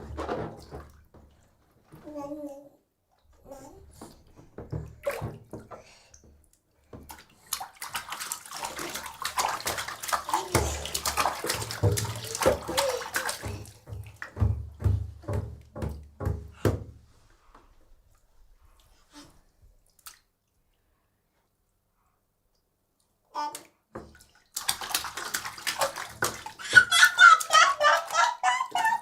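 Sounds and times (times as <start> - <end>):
baby splashing in bathwater: 3.4 - 6.3, 6.9 - 17.0, 23.4 - 29.0.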